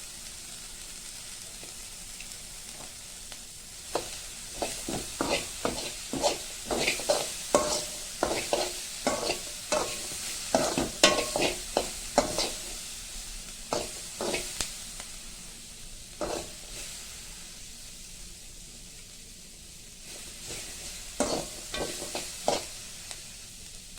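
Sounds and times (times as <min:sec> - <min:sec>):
cutlets sizzling in oil: 0:00.0 - 0:23.9
metal utensil scraping a pan: 0:03.9 - 0:12.8, 0:13.7 - 0:14.6, 0:16.2 - 0:16.9, 0:20.2 - 0:22.9.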